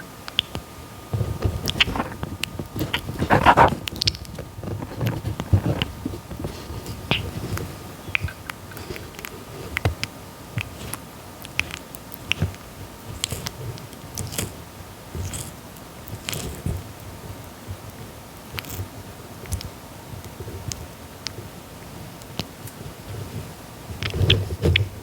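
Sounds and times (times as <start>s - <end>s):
tortoise biting and chewing: 1.2s - 12.6s.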